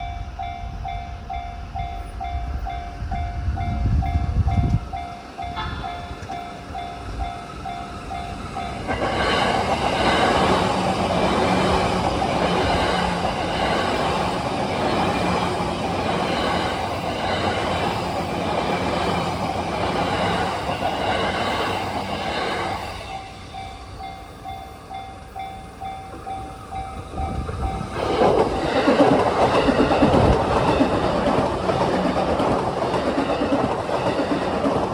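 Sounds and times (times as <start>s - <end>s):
train wheels clattering over rail joints: 4.6s - 23.1s, 27.0s - 34.9s.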